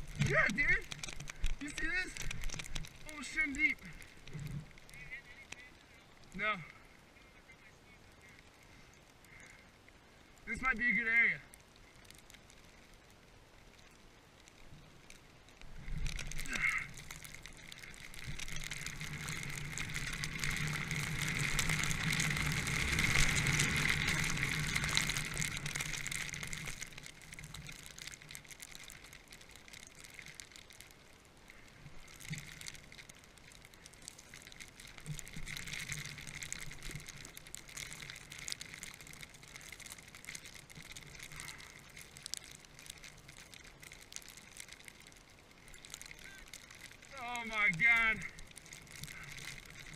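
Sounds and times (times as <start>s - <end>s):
rushing through powder snow: 15.7s - 29.1s.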